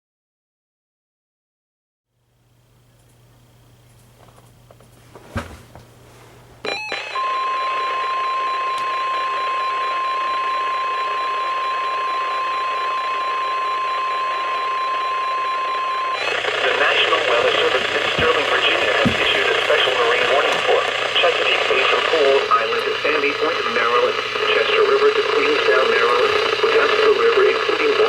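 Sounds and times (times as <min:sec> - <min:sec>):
faint hum: 0:02.1 - 0:06.8, 0:08.0 - 0:28.0
click: 0:03.0 - 0:03.2
burst of noise: 0:16.2 - 0:28.0
radio hiss: 0:16.2 - 0:28.0
weather radio alert tone: 0:16.2 - 0:28.0.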